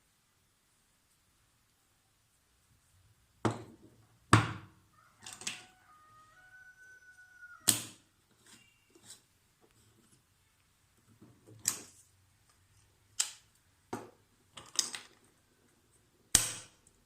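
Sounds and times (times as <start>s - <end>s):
faint thin squeak: 8.4s - 9.3s.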